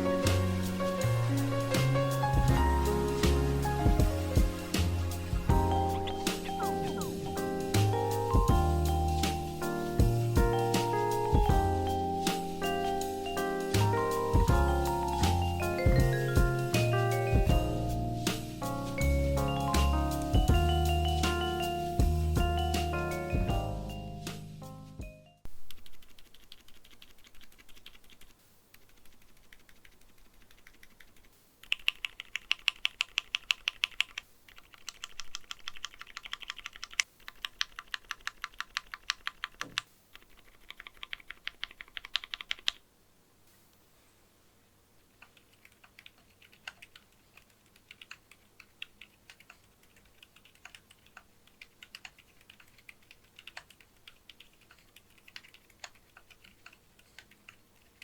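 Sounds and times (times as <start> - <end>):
typing on mechanical keyboard: 25.6 - 42.8, 45.2 - 58.0.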